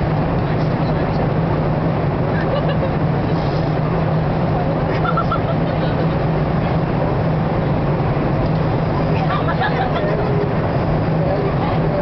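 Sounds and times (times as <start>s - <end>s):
airliner cabin drone: 0.0s - 12.0s
faint voices: 8.7s - 12.0s.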